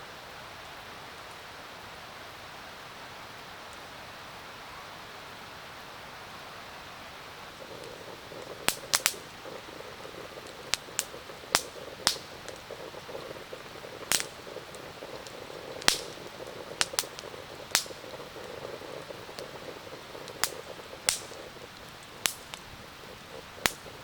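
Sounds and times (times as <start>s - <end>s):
campfire crackling and popping: 0.6s - 3.9s, 6.6s - 24.0s
coffee percolator bubbling: 7.5s - 24.0s.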